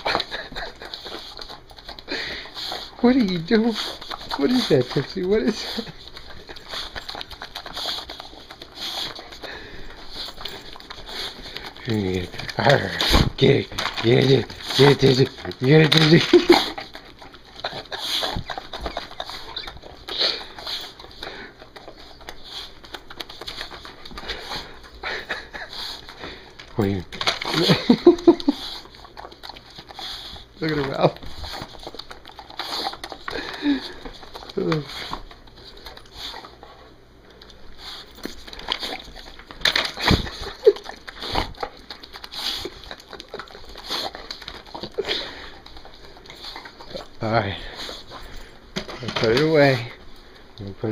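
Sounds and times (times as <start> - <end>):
dog tongue wet smacks: 0.0 - 48.5
dog breathy bursts: 2.0 - 3.0, 7.6 - 11.8.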